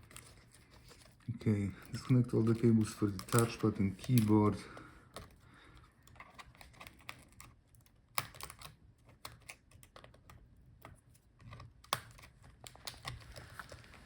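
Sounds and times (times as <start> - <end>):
plastic clicks of laptop connectors: 1.9 - 4.4, 5.1 - 13.5.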